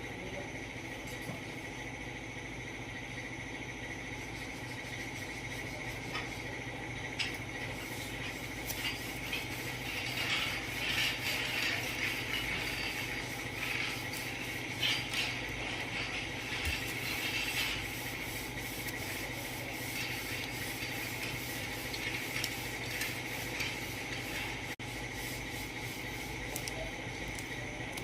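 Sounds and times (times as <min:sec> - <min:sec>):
steady mechanical hum: 0:00.0 - 0:28.0
rubbing and scraping: 0:07.6 - 0:26.7
scattered clicks: 0:26.5 - 0:28.0.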